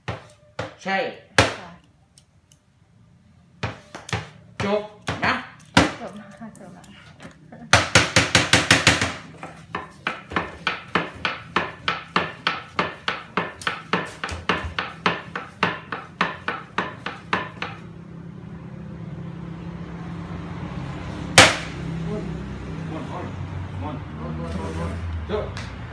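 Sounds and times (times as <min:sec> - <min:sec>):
wooden knocking: 0:07.7 - 0:17.8.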